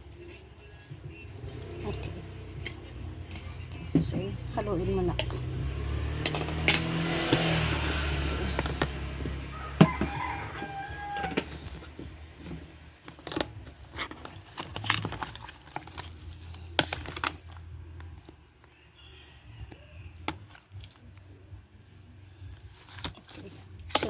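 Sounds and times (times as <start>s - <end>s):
rooster crowing: 9.4s - 11.9s, 18.6s - 20.5s.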